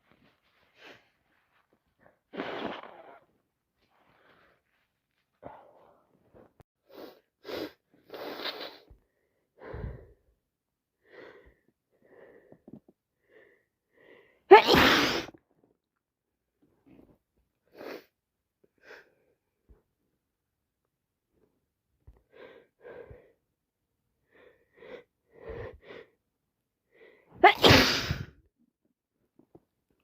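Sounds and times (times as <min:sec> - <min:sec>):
woman sneezing: 0:14.5 - 0:15.4, 0:27.4 - 0:28.3.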